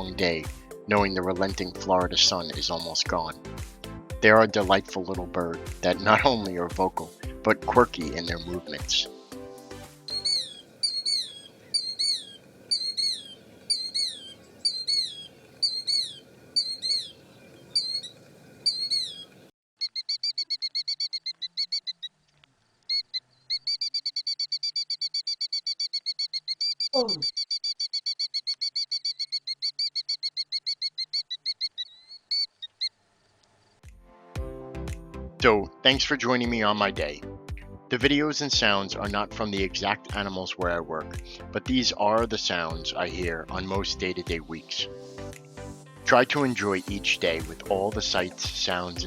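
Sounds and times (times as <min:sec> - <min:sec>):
killdeer calling: 0:00.0 - 0:03.5, 0:04.2 - 0:09.4, 0:10.0 - 0:22.2, 0:22.8 - 0:33.0, 0:46.1 - 0:49.0
fast high bird trill: 0:10.1 - 0:22.2, 0:22.9 - 0:33.0.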